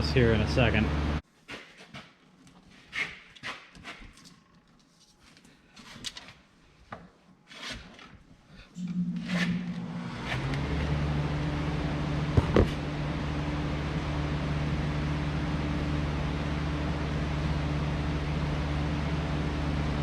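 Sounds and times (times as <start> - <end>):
machine motor humming: 8.8 - 20.0
sharp knocks: 12.4 - 12.8.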